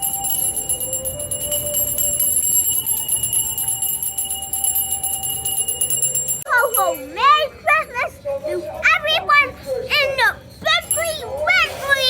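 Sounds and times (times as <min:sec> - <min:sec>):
handbell ringing rapidly: 0:00.0 - 0:07.2.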